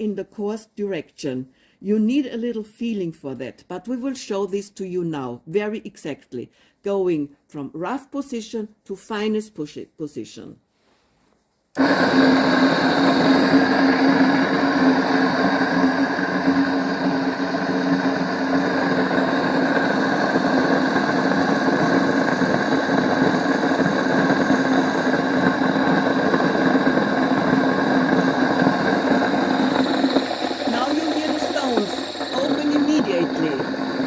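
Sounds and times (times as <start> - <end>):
grain mill motor humming: 11.8 - 34.0.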